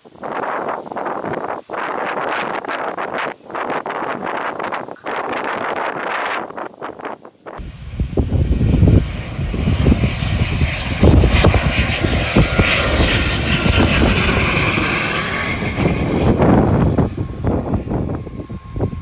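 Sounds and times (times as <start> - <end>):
wind buffeting microphone: 0.2 - 19.0
steady high hiss: 7.6 - 10.0
airliner engine noise: 7.6 - 19.0
faint thin whine: 7.6 - 19.0.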